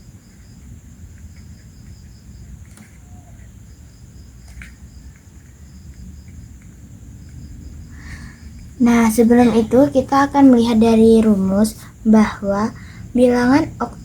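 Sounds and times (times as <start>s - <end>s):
insects chirping in pulses: 0.0s - 14.0s
low background hum: 0.0s - 14.0s
steady high whine: 4.8s - 14.0s.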